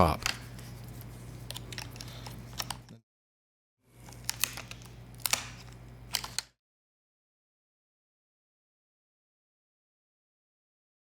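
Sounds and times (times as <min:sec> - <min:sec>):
plastic clicks and crackles: 0:04.1 - 0:06.5.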